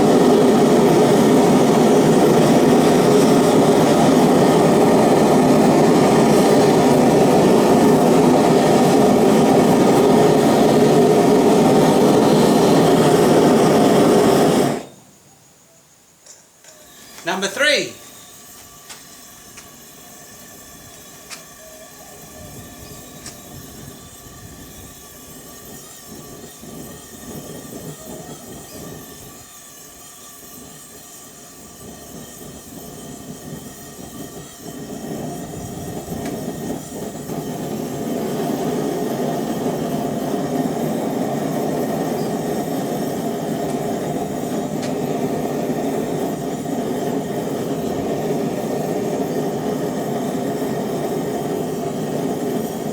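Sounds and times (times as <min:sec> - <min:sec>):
gas forge burner roar: 0:00.0 - 0:15.2, 0:16.2 - 0:52.9.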